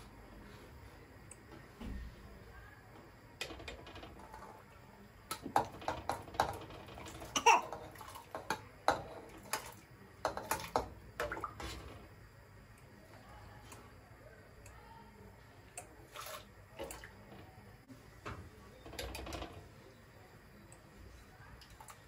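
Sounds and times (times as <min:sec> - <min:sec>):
water: 0:03.5 - 0:17.9, 0:20.7 - 0:22.0
dishes clinking and knocking: 0:05.3 - 0:12.1.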